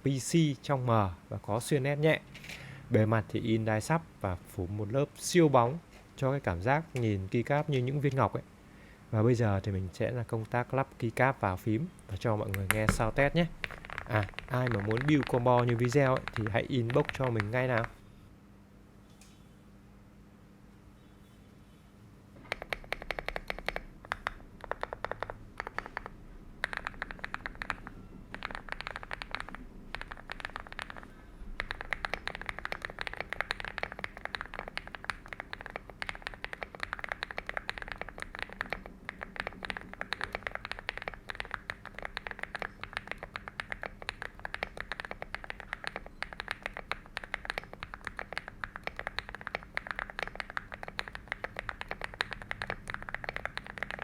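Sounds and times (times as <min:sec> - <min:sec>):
mechanical keyboard typing: 0:12.4 - 0:18.0, 0:22.4 - 0:54.0.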